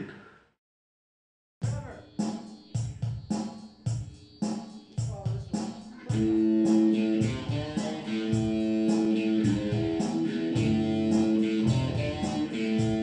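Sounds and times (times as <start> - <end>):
drum kit beat: 1.6 - 13.0
strummed guitar chords: 6.1 - 13.0.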